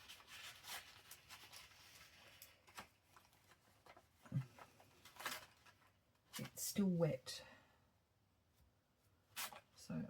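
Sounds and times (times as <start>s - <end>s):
paper rustling and tapping: 0.0s - 6.5s.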